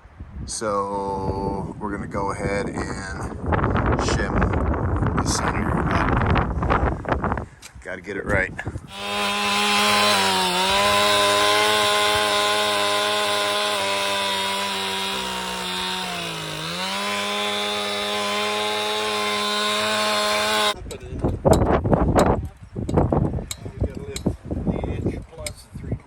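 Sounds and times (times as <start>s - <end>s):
power saw cutting wood: 8.9s - 20.8s.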